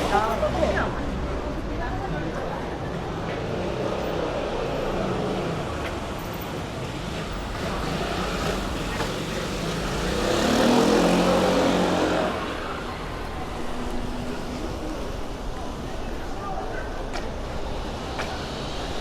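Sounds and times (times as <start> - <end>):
street noise: 0.0 - 19.0
car passing by: 3.4 - 15.0.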